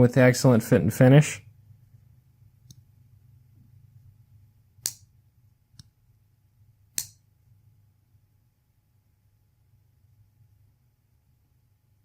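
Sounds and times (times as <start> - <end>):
folding knife blade clicks: 4.8 - 5.1, 7.0 - 7.2.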